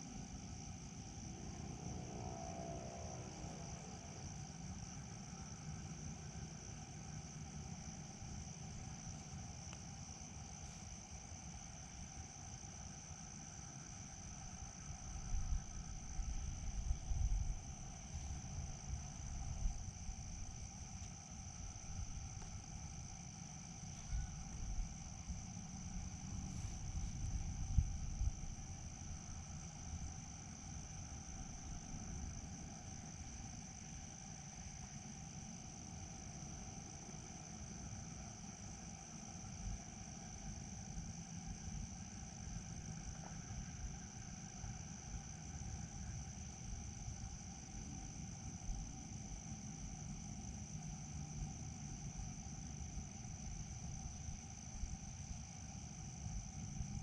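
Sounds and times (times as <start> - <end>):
crickets chirping: 0.0 - 57.0
low rumbles on microphone: 23.8 - 30.2.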